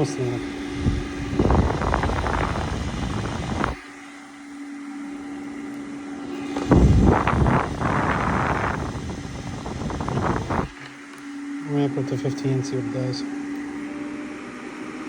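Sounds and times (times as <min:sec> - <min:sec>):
small fan humming: 0:00.0 - 0:15.0
airflow rushing against microphone: 0:00.6 - 0:03.9, 0:06.2 - 0:10.8.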